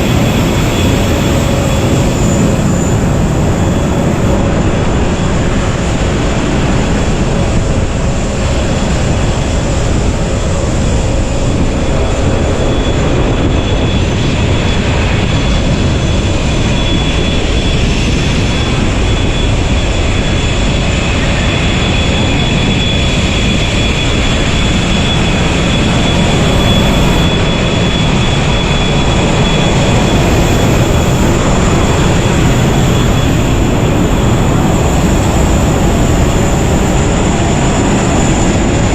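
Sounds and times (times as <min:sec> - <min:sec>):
aircraft cabin engine rumble: 0:00.0 - 0:38.9
thin high whine: 0:21.8 - 0:38.6.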